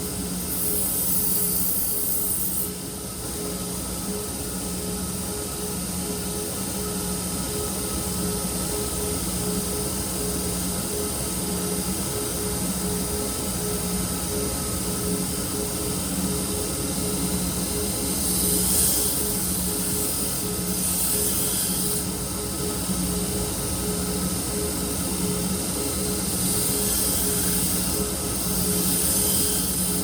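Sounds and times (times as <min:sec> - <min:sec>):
steel hissing on grinder: 0:00.4 - 0:02.7, 0:18.1 - 0:22.1, 0:26.4 - 0:30.0.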